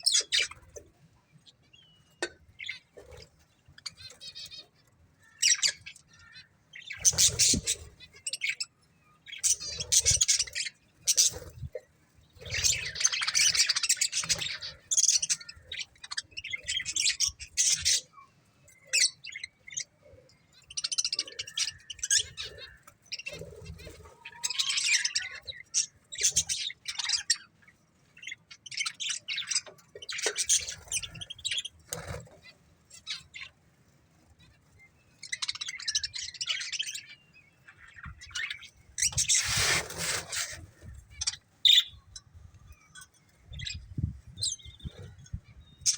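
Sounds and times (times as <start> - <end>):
budgerigars chirping: 5.3 - 8.7, 9.3 - 11.6.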